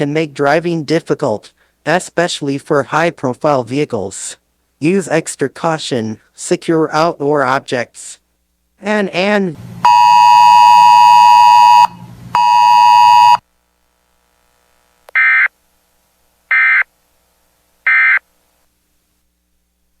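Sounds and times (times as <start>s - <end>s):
short data bursts: 9.8s - 13.4s, 16.5s - 16.9s, 17.8s - 18.2s.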